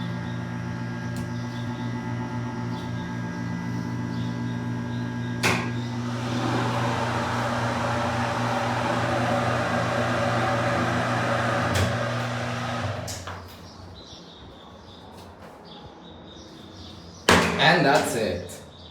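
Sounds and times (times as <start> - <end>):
electrical hum: 0.0 - 14.0
hydraulic unit rushing: 5.4 - 13.5.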